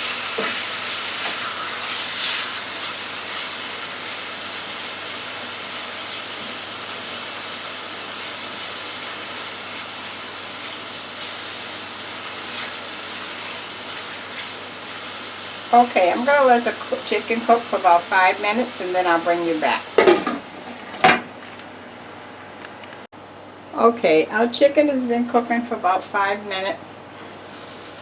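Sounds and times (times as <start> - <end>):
chicken sizzling in a frying pan: 0.0 - 20.2, 27.4 - 28.0.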